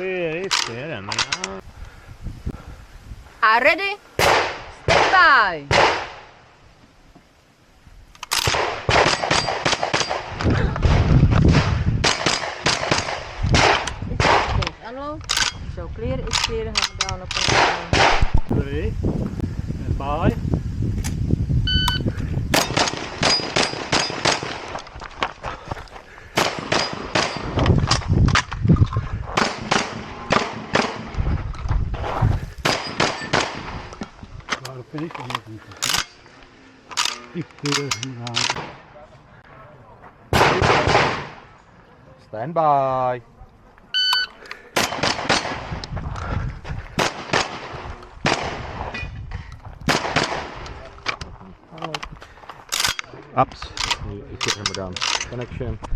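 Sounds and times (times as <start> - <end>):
rapid gunshots: 8.5 - 14.6, 26.4 - 27.6, 29.4 - 31.1, 44.8 - 45.8, 49.9 - 50.6
shot timer beep: 21.7 - 22.0, 44.0 - 44.4.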